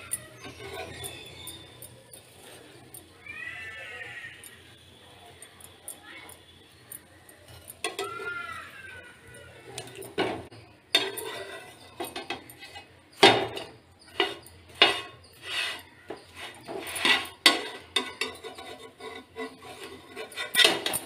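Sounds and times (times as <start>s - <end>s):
metal utensils clinking on pans: 0.0s - 21.0s.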